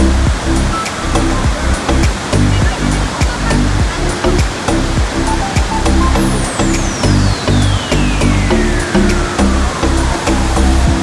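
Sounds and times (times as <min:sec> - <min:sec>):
music with beat and bass: 0:00.0 - 0:11.0
waterfall rushing: 0:00.0 - 0:11.0.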